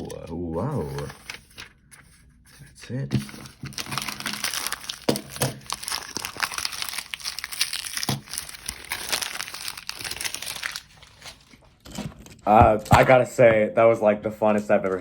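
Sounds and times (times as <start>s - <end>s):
packaging crinkling: 3.2s - 12.1s.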